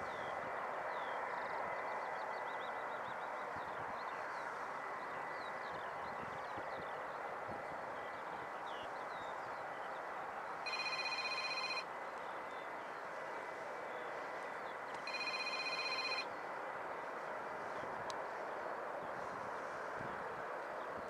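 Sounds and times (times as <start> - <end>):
trilling electronic ring: 10.7 - 11.8, 15.1 - 16.2.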